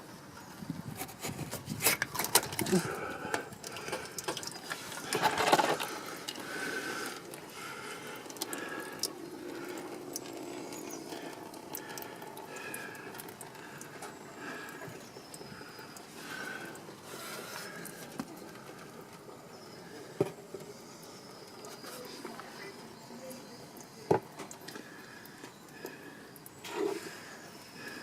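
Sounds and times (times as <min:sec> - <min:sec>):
hand tools clattering on metal: 0:03.9 - 0:05.9
scraping and rattling: 0:03.9 - 0:06.1.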